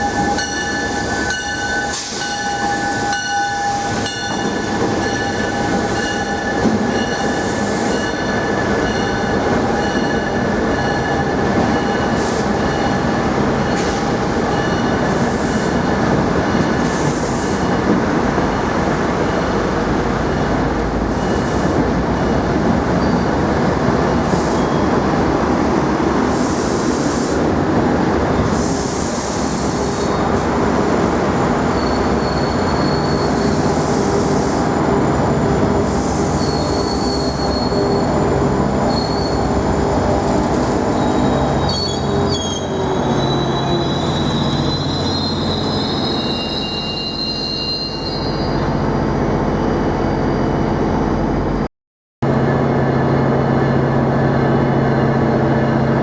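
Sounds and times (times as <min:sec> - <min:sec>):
train wheels rumbling on rail: 0:00.0 - 0:56.0
high-pitched squeals: 0:40.9 - 0:48.7.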